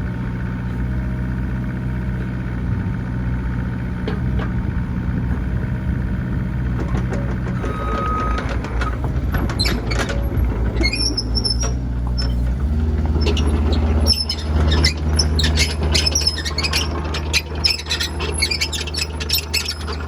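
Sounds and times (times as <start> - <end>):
excavator diesel engine running: 0.0 - 20.0
machine squeaks and clicks: 6.8 - 20.0.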